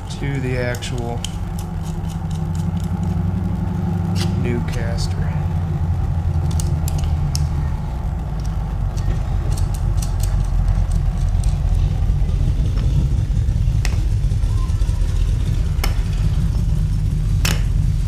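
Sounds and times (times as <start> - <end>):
metal parts clicking: 0.0 - 3.2, 6.3 - 7.5, 8.3 - 14.2
steady low rumble: 0.0 - 18.0.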